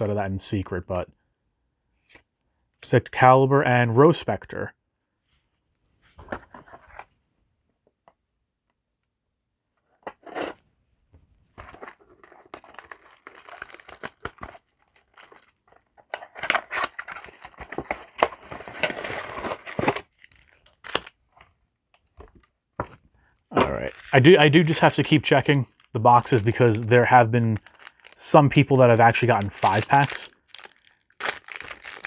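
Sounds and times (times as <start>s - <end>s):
foil wrapper tearing and crinkling: 12.2s - 15.6s, 16.3s - 21.1s, 23.7s - 32.0s.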